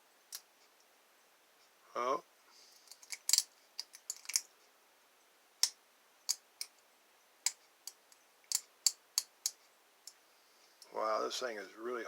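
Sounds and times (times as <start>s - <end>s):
lock pick clicking on pins: 2.9s - 4.5s, 7.5s - 9.6s.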